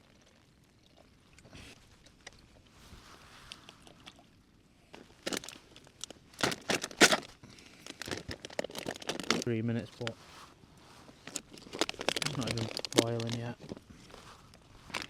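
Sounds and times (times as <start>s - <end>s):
packaging rustling: 5.0s - 10.2s, 11.0s - 15.0s.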